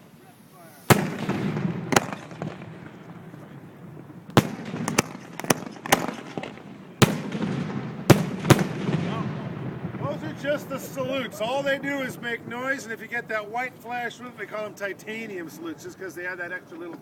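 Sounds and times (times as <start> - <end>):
firework shells bursting with bangs: 0.7 - 12.4.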